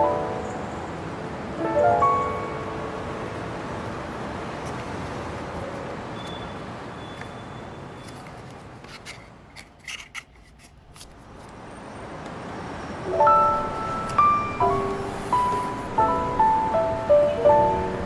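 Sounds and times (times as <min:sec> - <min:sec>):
background music: 0:13.1 - 0:18.0
music with bell-like notes: 0:13.1 - 0:18.0
steady hiss: 0:13.3 - 0:18.0.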